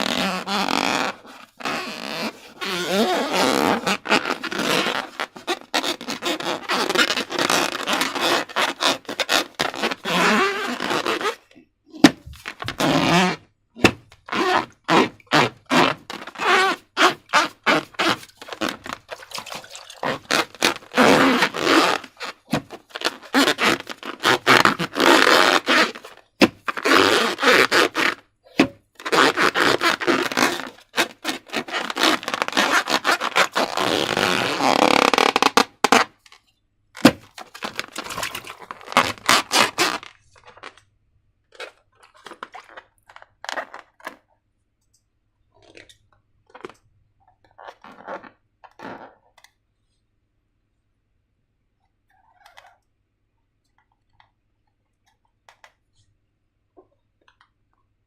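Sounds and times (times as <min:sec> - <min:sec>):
slime squelching and crackling: 0:17.7 - 0:22.3.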